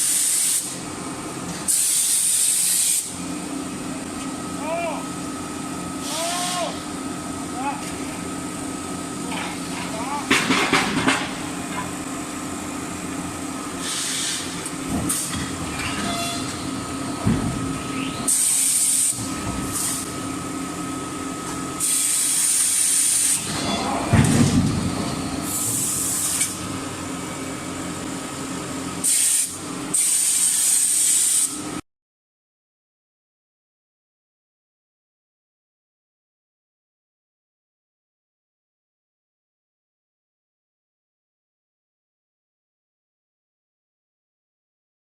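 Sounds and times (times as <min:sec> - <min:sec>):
steady machine hum: 0:00.7 - 0:30.3.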